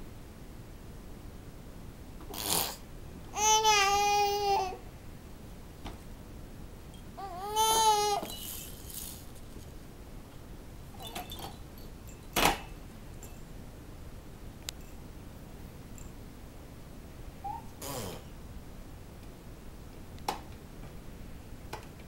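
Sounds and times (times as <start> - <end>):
baby squealing: 7.2 - 8.4, 17.4 - 18.2.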